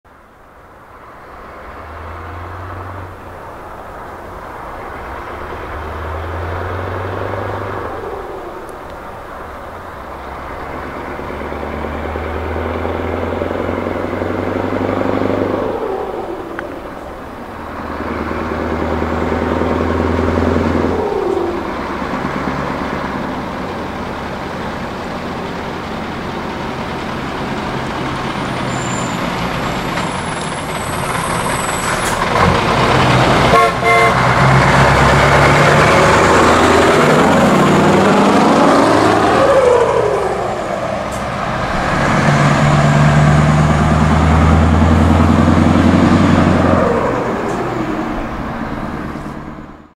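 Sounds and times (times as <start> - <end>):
truck diesel engine revving: 1.0 - 49.9
truck horn toot: 33.4 - 34.7.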